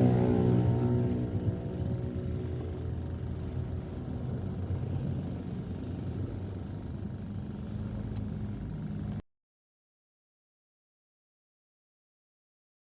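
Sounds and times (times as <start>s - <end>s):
vehicle rumble: 0.0s - 9.2s.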